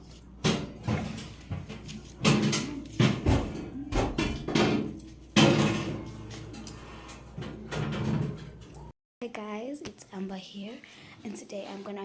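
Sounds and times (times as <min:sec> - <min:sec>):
sharp knocks and bangs: 0:00.4 - 0:06.2.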